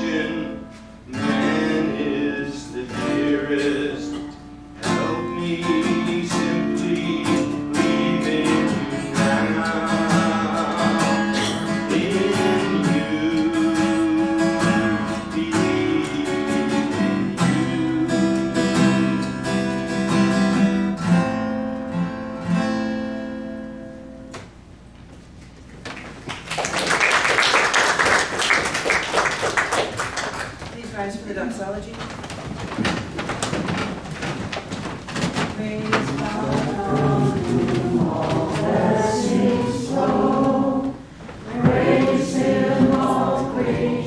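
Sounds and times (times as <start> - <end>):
acoustic guitar strummed and picked: 0.0 - 24.6, 34.8 - 44.0.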